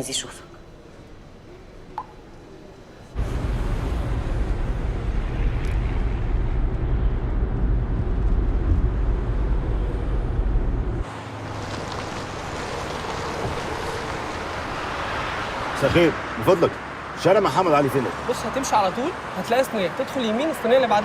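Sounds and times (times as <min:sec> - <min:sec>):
car engine and road rumble: 0:03.1 - 0:19.5.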